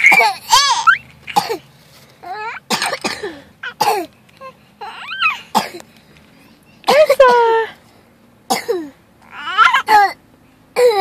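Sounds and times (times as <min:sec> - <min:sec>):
baby laughing: 0:00.0 - 0:01.5, 0:03.6 - 0:05.6, 0:09.2 - 0:10.0
child coughing: 0:00.0 - 0:01.7, 0:02.5 - 0:04.1, 0:05.5 - 0:05.8, 0:06.9 - 0:07.3, 0:08.5 - 0:09.0, 0:09.6 - 0:10.2, 0:10.8 - 0:11.0.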